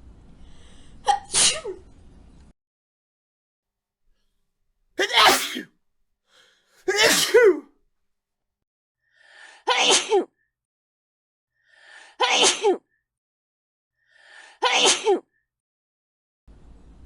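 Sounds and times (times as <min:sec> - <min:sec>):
person sneezing: 0:05.0 - 0:05.7, 0:06.9 - 0:07.6.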